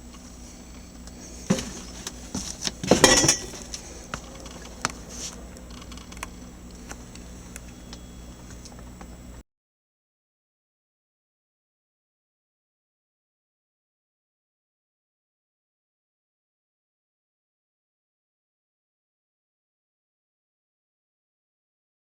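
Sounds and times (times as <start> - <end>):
faint steady hum: 0.0 - 9.4
objects clicking and rattling: 1.5 - 5.0.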